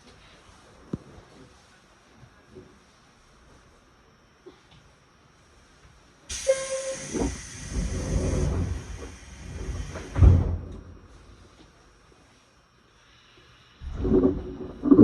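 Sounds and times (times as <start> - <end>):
loud compressed air hiss: 6.3 - 10.7
pneumatic thumps: 6.3 - 11.1.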